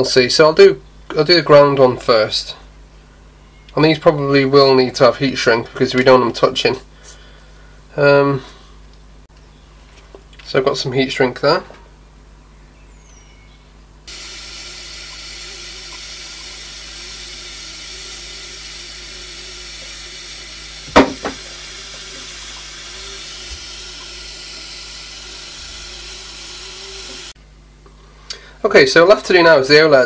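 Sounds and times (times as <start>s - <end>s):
heat gun blowing: 14.1s - 27.4s
sharp knock: 20.9s - 21.4s.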